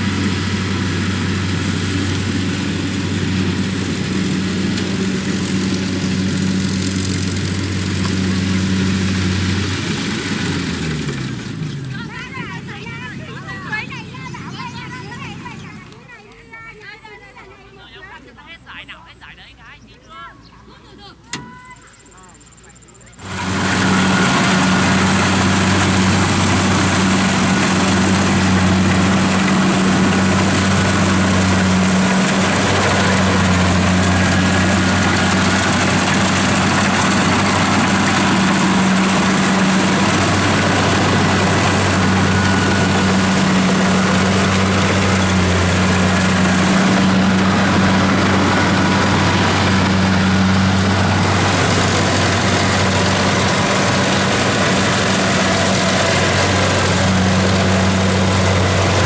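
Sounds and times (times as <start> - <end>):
combine harvester diesel engine running: 0.0 - 19.9, 20.5 - 59.0.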